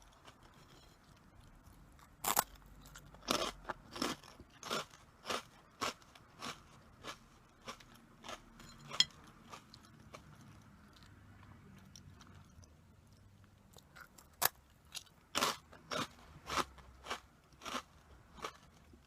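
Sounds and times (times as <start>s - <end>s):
person crunching snacks: 1.8s - 10.3s, 13.8s - 19.0s.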